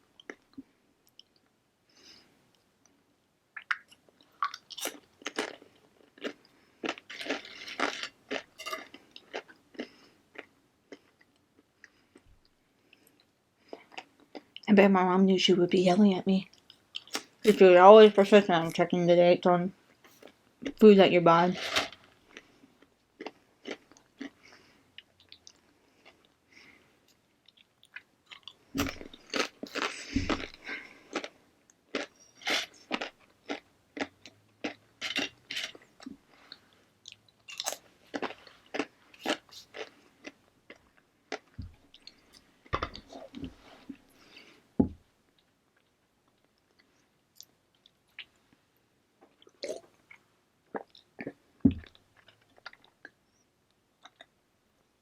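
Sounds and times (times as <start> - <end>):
crunching tortilla chips: 3.7 - 11.4, 27.5 - 35.9.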